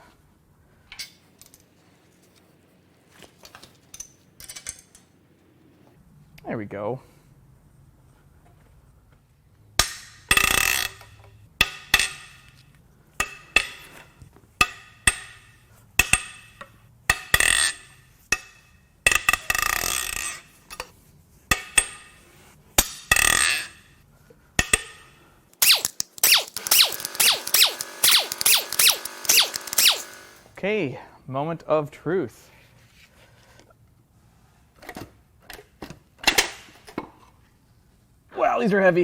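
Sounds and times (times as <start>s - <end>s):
power wrench whirring: 25.6s - 30.5s
sharp metal clanks: 25.6s - 30.5s.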